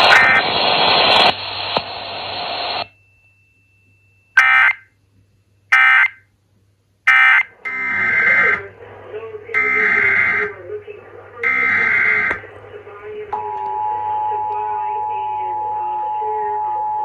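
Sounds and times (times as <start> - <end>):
radio static hiss: 0.0 - 2.9, 4.4 - 4.8, 5.7 - 6.2, 7.1 - 13.7
screeching digital data bursts: 7.1 - 8.6, 11.4 - 12.4.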